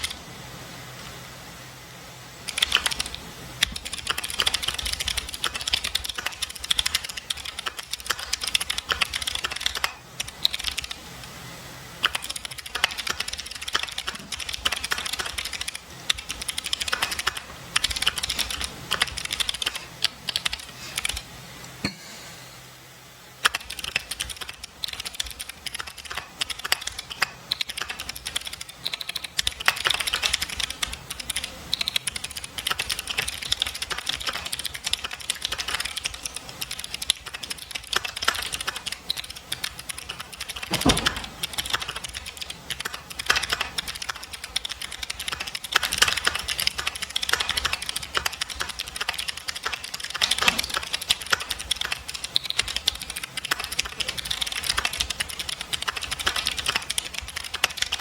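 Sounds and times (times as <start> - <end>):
mechanical keyboard typing: 2.5 - 11.0, 12.0 - 21.2, 23.4 - 58.0
heavy thump: 40.7 - 41.5.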